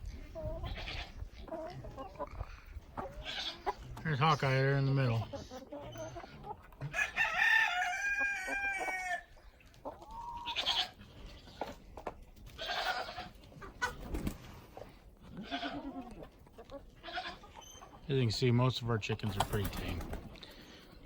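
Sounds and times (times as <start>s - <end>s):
chickens and goats calling: 0.0s - 18.6s
rooster crowing: 6.9s - 9.3s.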